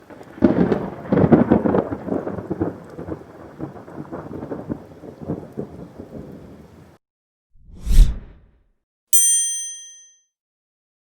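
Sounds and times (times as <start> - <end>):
thunderclap rumbling: 0.0 - 7.0.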